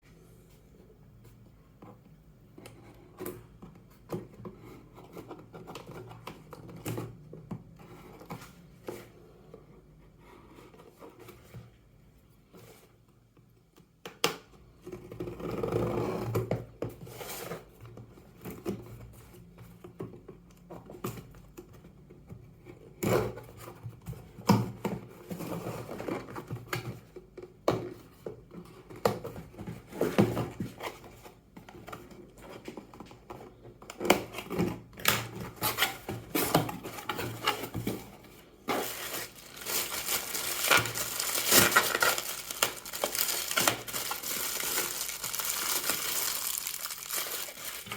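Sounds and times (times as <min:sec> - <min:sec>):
cardboard and plastic rustling: 0:28.6 - 0:47.9
plastic crinkling: 0:38.7 - 0:47.9.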